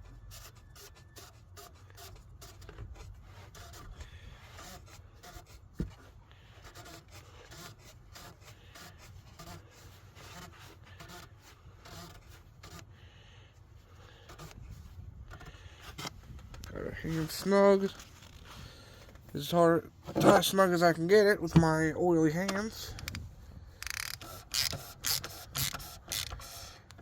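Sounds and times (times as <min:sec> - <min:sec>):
lid rubbing and clicking: 0:23.8 - 0:27.0.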